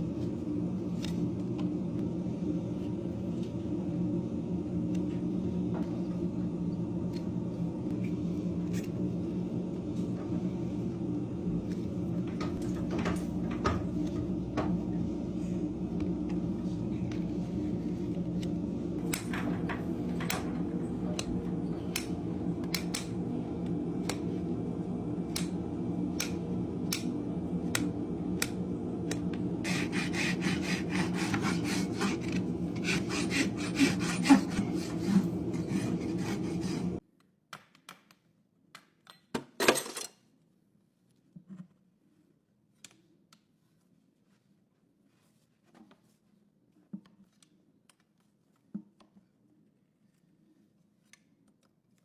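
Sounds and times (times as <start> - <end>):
steady low hum: 0.0 - 37.0
hoof rasp filing: 29.6 - 37.0.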